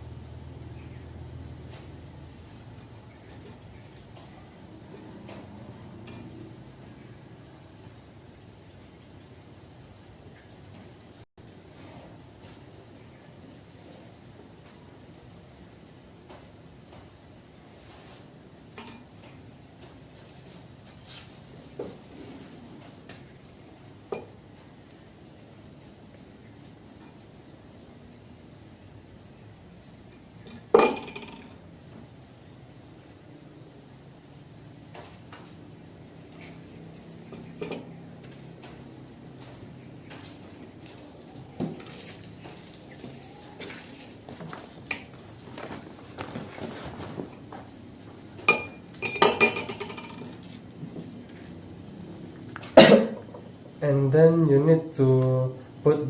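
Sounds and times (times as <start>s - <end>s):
drinking glass clink: 30.5s - 31.6s, 48.5s - 50.3s.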